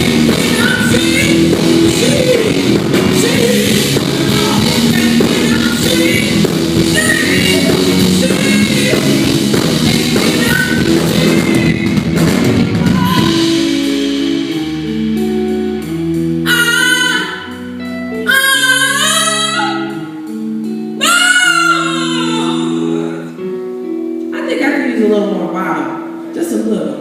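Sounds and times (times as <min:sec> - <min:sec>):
woman singing: 0:00.0 - 0:12.0, 0:12.8 - 0:13.6, 0:16.4 - 0:20.1, 0:21.0 - 0:23.3
live band playing: 0:00.0 - 0:27.0.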